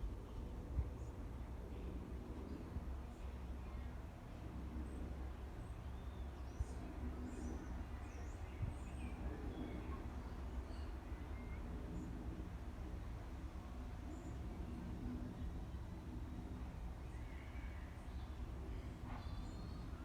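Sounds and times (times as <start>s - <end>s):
faint bird chirps and whistles: 6.0s - 11.7s.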